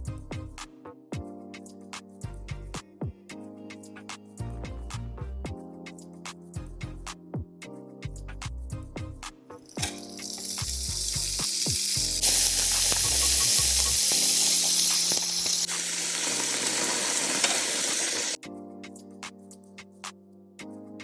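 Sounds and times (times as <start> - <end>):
food frying sizzle: 9.8 - 18.4.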